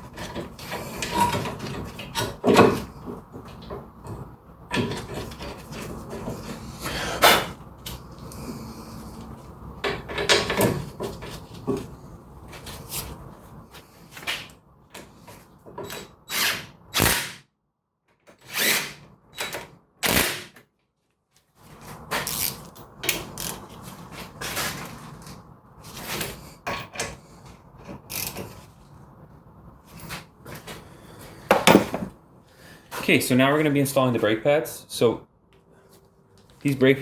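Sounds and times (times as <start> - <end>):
power tool bursts: 16.3 - 17.4, 20.0 - 20.5.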